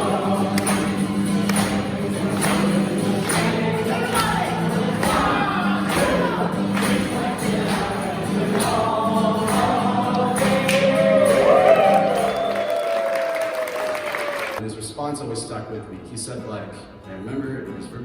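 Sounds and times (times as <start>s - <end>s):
percussion strikes: 0.0s - 12.4s.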